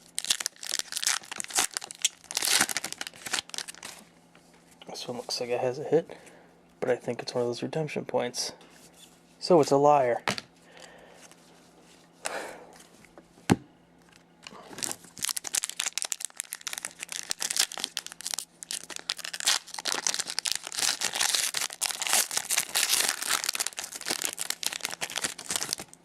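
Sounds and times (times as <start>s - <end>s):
foil wrapper crinkling and tearing: 0.0s - 4.0s, 14.7s - 26.0s.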